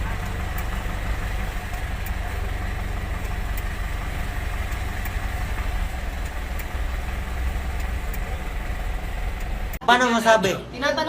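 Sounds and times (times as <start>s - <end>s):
truck engine running: 0.0s - 9.8s
faint light ticks: 0.2s - 0.8s, 1.7s - 3.9s, 4.5s - 8.3s.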